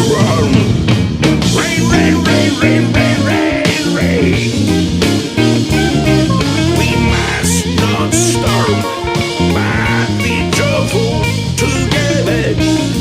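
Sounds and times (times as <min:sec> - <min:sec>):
bass: 0:00.0 - 0:13.0
drums: 0:00.0 - 0:13.0
electric guitar: 0:00.0 - 0:13.0.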